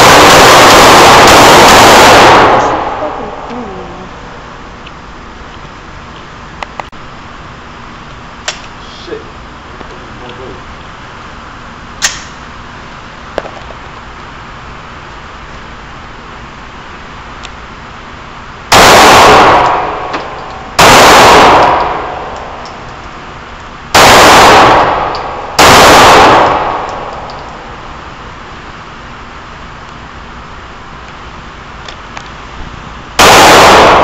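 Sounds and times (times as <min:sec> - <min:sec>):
pistol shots ringing: 0:18.7 - 0:22.6, 0:23.9 - 0:27.3, 0:33.2 - 0:34.0.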